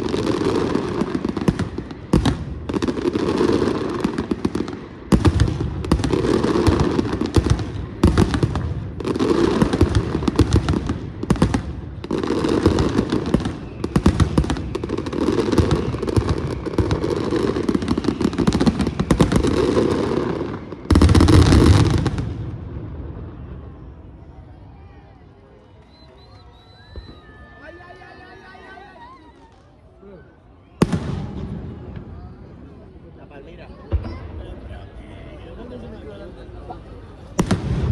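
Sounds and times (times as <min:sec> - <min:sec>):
fireworks crackling and popping: 0:00.0 - 0:23.4, 0:25.7 - 0:27.8, 0:30.8 - 0:32.2, 0:37.3 - 0:37.9.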